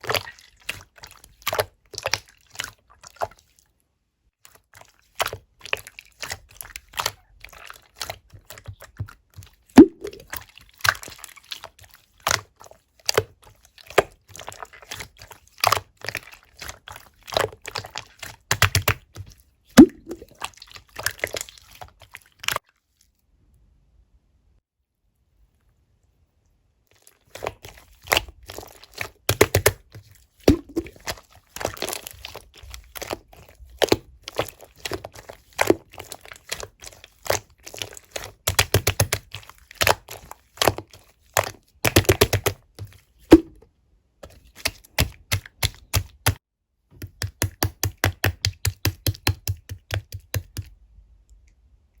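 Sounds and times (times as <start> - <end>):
slime clicking and popping: 19.8 - 20.2, 38.2 - 40.8, 41.8 - 42.6.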